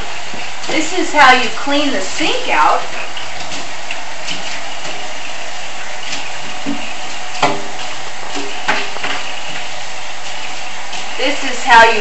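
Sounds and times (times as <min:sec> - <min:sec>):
steady hiss in sink: 0:00.0 - 0:12.0.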